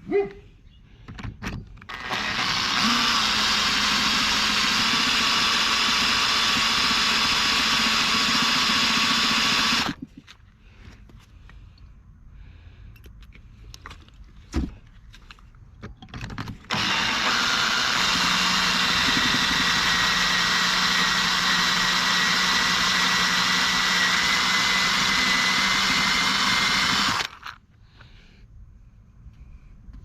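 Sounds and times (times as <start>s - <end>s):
electric drill running: 1.9s - 10.0s, 16.7s - 27.6s.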